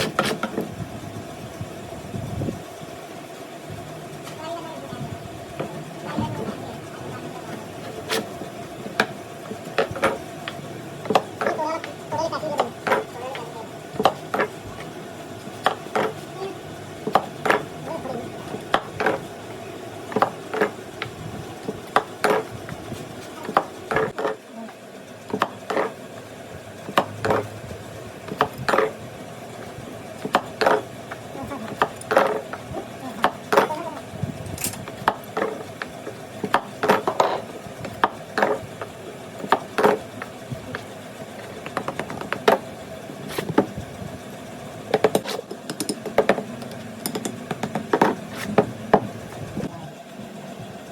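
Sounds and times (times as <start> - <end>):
sharp clicks and knocks: 34.5 - 42.7, 44.9 - 49.2.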